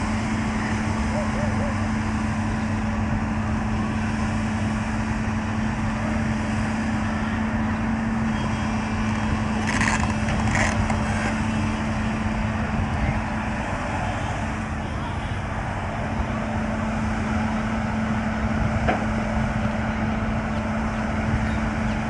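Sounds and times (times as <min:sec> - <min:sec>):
diesel engine running: 0:00.0 - 0:22.0.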